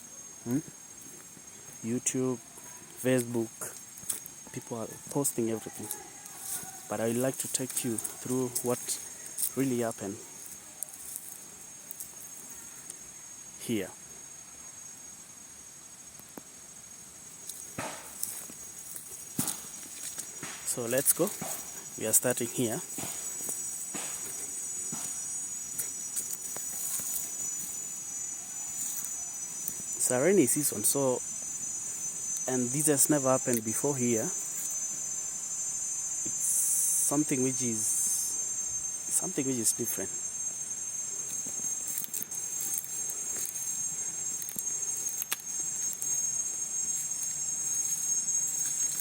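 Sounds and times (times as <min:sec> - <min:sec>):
faint footsteps: 0:00.0 - 0:13.0, 0:17.3 - 0:30.2, 0:40.9 - 0:49.0
insect chorus chirring: 0:00.0 - 0:49.0.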